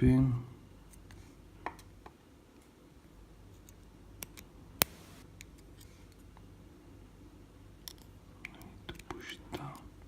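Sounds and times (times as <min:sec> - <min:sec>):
small metal lock parts clicking: 0:07.8 - 0:09.1.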